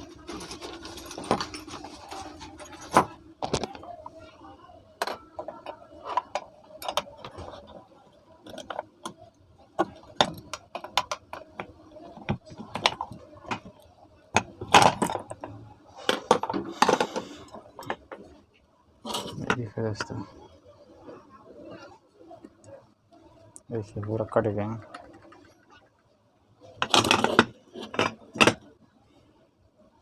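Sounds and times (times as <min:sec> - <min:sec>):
metal parts clinking and knocking: 0:00.0 - 0:03.8
metal rattling and scraping: 0:00.0 - 0:03.8.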